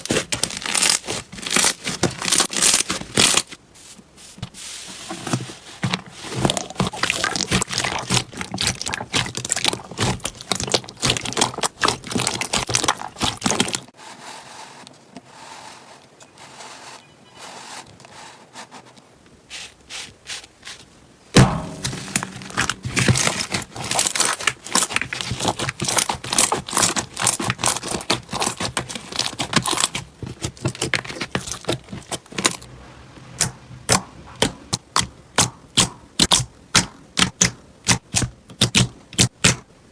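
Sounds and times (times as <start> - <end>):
slime crackling and popping: 0.0 - 3.5, 6.4 - 13.9, 21.4 - 32.6, 33.4 - 39.6.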